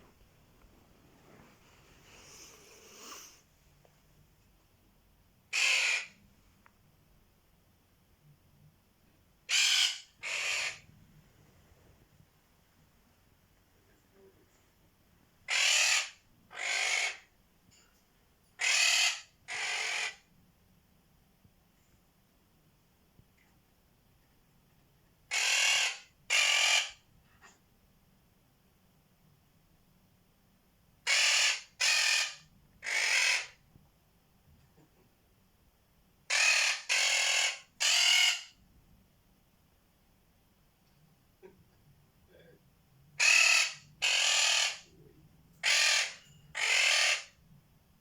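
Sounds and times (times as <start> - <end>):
parrot hissing calls: 5.5 - 6.2, 9.5 - 10.8
parrot squawking: 5.5 - 6.2, 9.5 - 10.8, 15.5 - 17.2, 18.6 - 20.2, 25.3 - 27.0, 31.1 - 33.6, 36.3 - 38.6, 43.2 - 44.9, 45.6 - 47.3.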